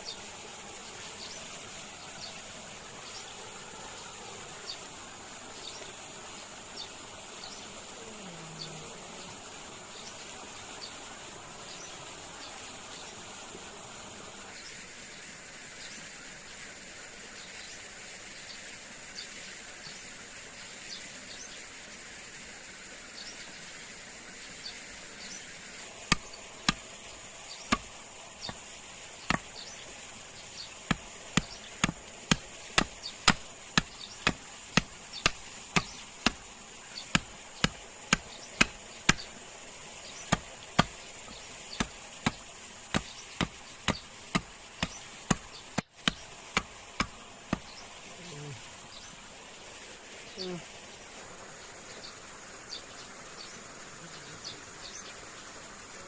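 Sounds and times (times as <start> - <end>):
high insect drone: 0.0 - 11.0, 25.0 - 55.9
chopping wood: 26.1 - 26.9, 27.6 - 28.6, 29.2 - 29.6, 30.8 - 36.5, 37.1 - 39.3, 40.2 - 41.0, 41.7 - 47.7.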